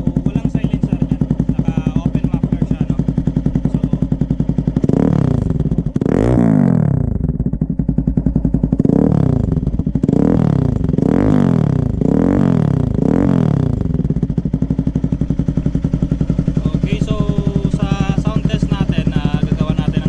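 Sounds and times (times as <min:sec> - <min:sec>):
motorcycle engine idling and revving: 0:00.0 - 0:20.0.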